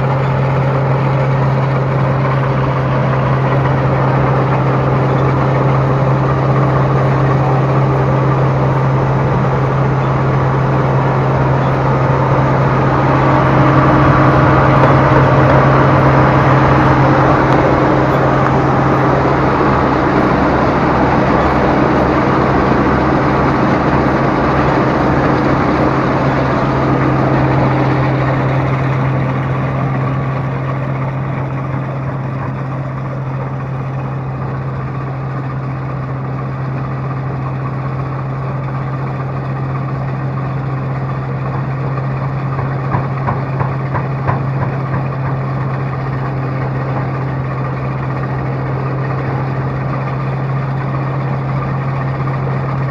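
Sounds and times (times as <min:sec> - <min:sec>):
harvester engine hum: 0:00.0 - 0:52.9
machinery noise: 0:00.0 - 0:52.9.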